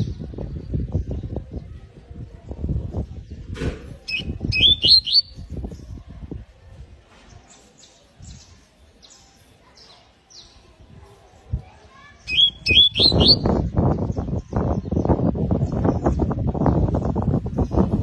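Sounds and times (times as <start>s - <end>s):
canary chirping: 4.1s - 5.4s, 12.2s - 13.6s.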